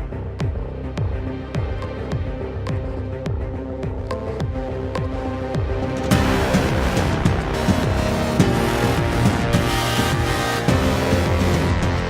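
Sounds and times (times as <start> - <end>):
electronic beat music: 0.0 - 12.0
deep kick drum hits: 6.1 - 12.0.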